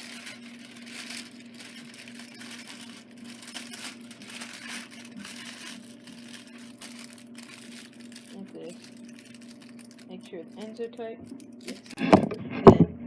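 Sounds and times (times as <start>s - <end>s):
aluminium foil crinkling: 0.0s - 12.1s
steady low hum: 0.0s - 13.0s.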